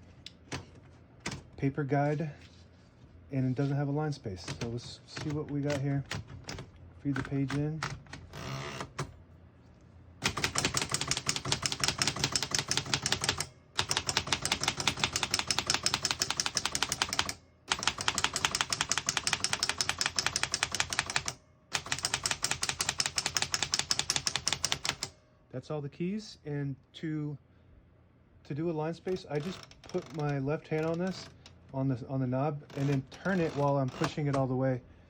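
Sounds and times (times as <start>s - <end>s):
typewriter keystrokes clacking: 10.2s - 25.1s.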